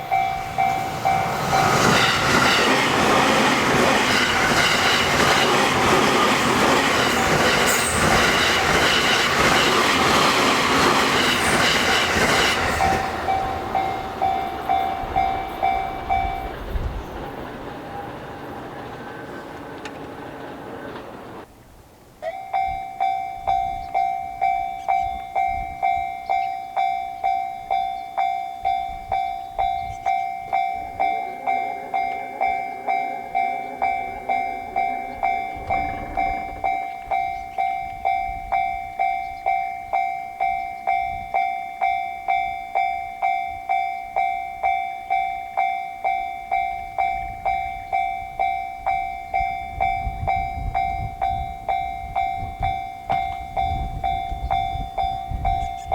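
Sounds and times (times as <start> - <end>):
level crossing bell ringing: 0.0 - 17.0, 22.2 - 55.9.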